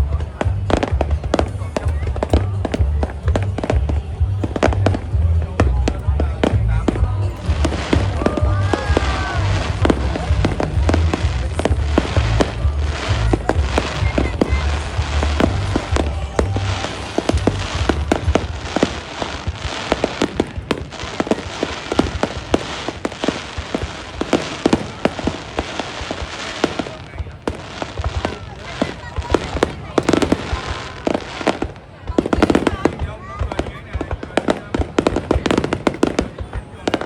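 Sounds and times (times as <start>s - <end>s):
deep bass music: 0.0s - 22.4s
fireworks bangs and crackles: 0.0s - 37.0s.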